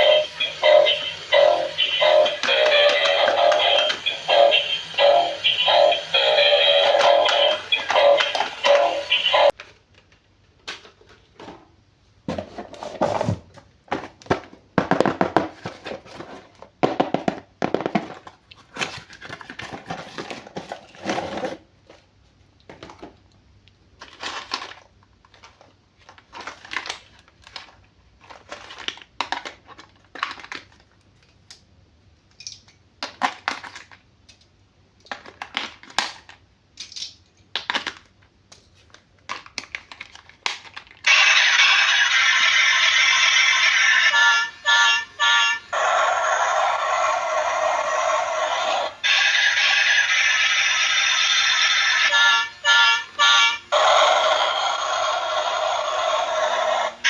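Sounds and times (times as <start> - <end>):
packaging crinkling and rustling: 24.0 - 31.5, 37.5 - 41.0.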